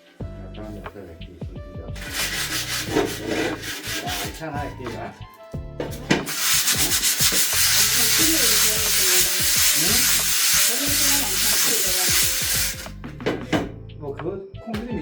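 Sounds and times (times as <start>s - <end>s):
scrubbing on metal: 2.0s - 5.1s, 5.9s - 12.9s.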